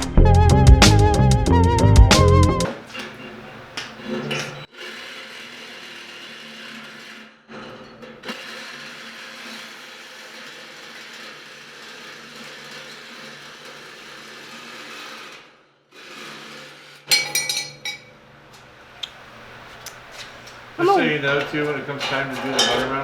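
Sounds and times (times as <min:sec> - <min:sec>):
ringing metal clanks: 0:21.4 - 0:23.0.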